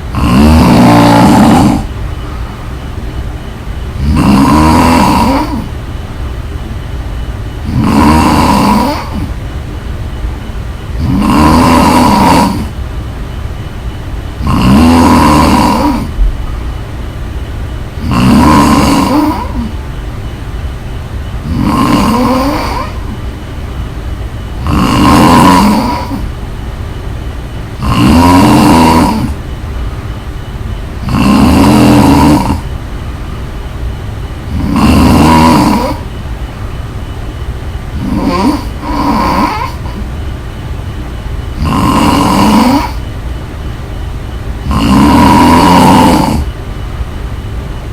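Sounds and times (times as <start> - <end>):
woman snoring: 0.1 - 1.9, 4.0 - 5.7, 7.6 - 9.3, 11.0 - 12.7, 14.4 - 16.2, 18.0 - 19.8, 21.4 - 23.2, 24.6 - 26.3, 27.8 - 29.4, 31.0 - 32.7, 34.5 - 36.1, 38.0 - 40.1, 41.6 - 43.1, 44.6 - 46.6
quiet breathing: 0.9 - 4.0, 32.4 - 34.7.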